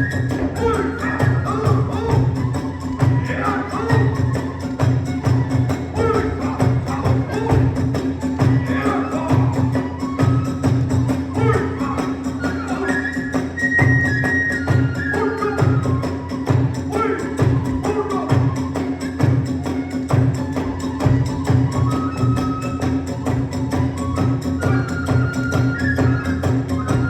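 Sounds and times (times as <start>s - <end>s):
drum beat: 0.0s - 12.0s
high flute melody: 0.0s - 27.0s.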